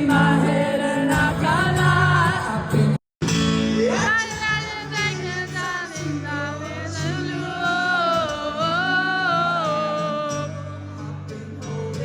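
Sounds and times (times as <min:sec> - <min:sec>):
person singing with vibrato: 0:00.0 - 0:03.0, 0:03.7 - 0:12.0
acoustic guitar: 0:00.0 - 0:12.0.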